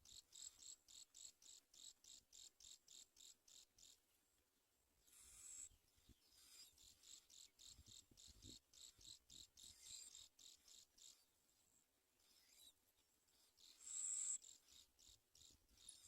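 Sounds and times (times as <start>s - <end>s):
cricket chirping: 0.0s - 4.0s, 6.4s - 11.2s, 13.6s - 16.0s.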